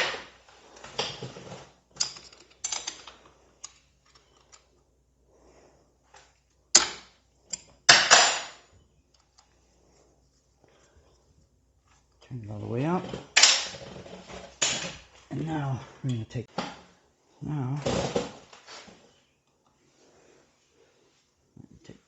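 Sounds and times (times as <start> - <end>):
hand tools clicking on metal: 1.9 - 4.7, 6.7 - 8.5.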